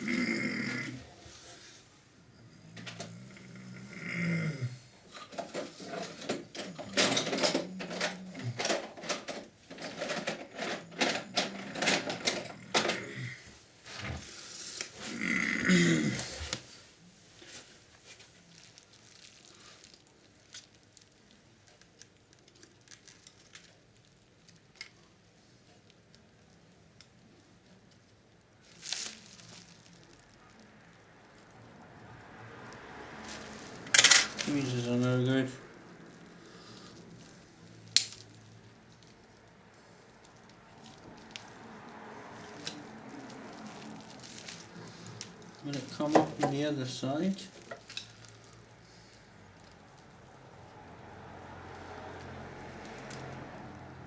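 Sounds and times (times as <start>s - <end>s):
small tools clicking and clattering: 5.1s - 13.4s, 32.2s - 36.4s, 37.0s - 39.2s, 40.2s - 48.8s
faint handling noise: 16.1s - 53.8s
tools scraping metal mechanism: 33.8s - 34.8s.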